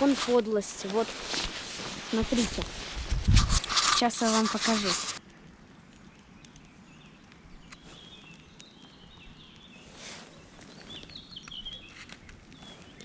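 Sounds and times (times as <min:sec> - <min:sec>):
small birds chirping: 0:04.0 - 0:13.0.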